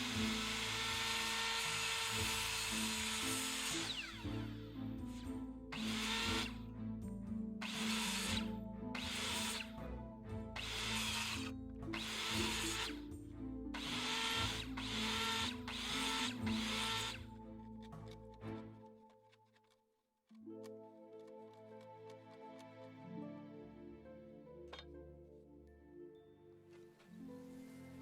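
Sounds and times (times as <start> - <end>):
power tool harsh bursts: 0.0 - 4.3, 5.7 - 6.5, 7.6 - 9.7, 10.6 - 12.9, 13.8 - 17.2
background music: 0.0 - 28.0.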